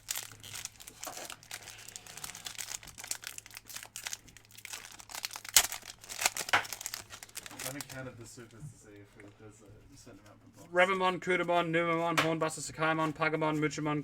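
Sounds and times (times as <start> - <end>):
foil pack crinkling: 0.0 - 8.5.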